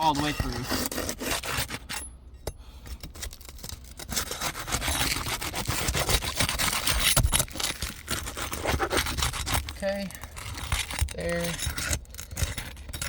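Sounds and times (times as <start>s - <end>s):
roofing tool scraping under shingles: 0.0s - 2.1s, 2.7s - 13.0s
adhesive seal tearing: 3.3s - 11.2s.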